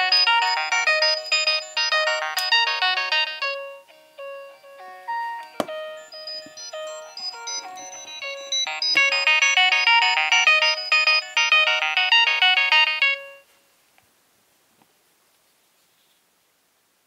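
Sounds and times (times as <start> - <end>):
mobile phone polyphonic ringtone: 0.0 - 13.5.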